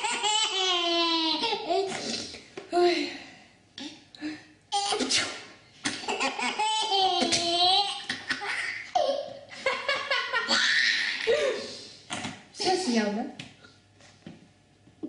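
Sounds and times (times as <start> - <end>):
baby laughing: 0.0 - 2.1, 5.9 - 11.6.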